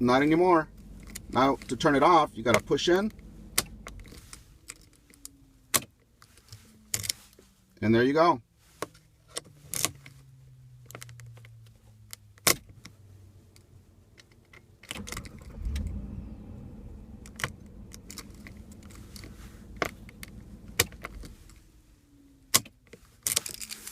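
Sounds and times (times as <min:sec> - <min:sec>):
car engine rumbling: 0:00.0 - 0:23.9
ignition switch clicks: 0:00.9 - 0:04.1.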